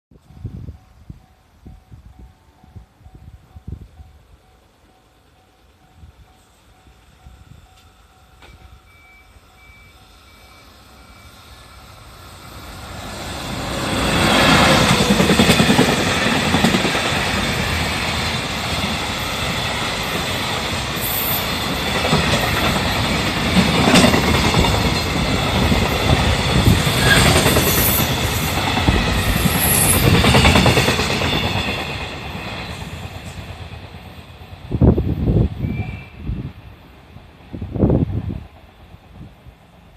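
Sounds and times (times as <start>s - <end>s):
train rumble: 0.2s - 39.9s
level crossing warning bell: 4.0s - 12.0s
wheels clacking over rail joints: 13.0s - 34.1s.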